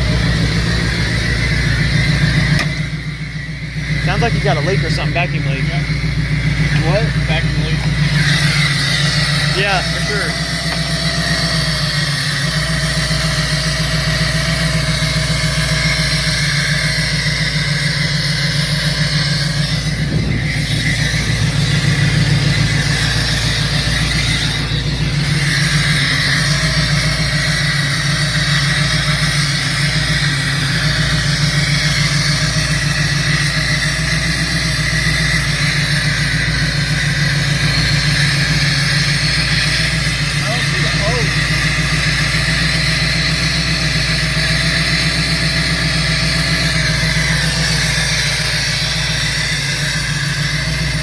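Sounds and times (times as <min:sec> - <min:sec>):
car engine idling roughly: 0:00.0 - 0:51.0
supercharger whine: 0:00.0 - 0:51.0.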